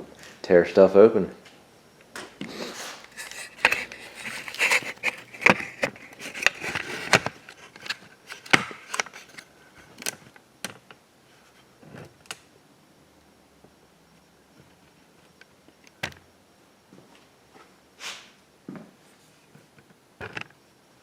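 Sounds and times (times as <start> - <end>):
crinkly rustling: 2.5 - 9.5
handling clicks and knocks: 3.1 - 9.4.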